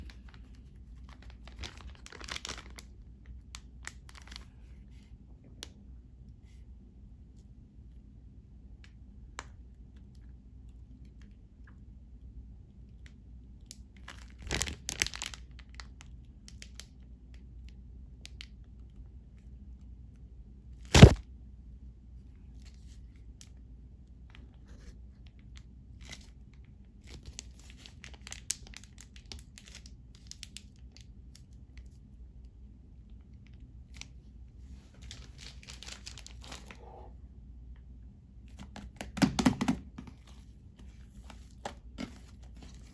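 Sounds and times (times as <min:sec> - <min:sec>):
crinkling handling sounds: 0:00.0 - 0:05.2, 0:14.0 - 0:17.0, 0:20.9 - 0:21.2, 0:24.3 - 0:32.2, 0:33.0 - 0:37.1, 0:40.1 - 0:42.9.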